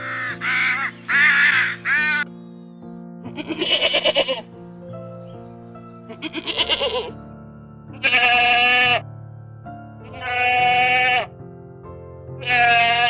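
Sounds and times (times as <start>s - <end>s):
animal calling: 0.0s - 2.3s, 3.4s - 4.5s, 6.1s - 7.2s
background music: 0.0s - 13.0s.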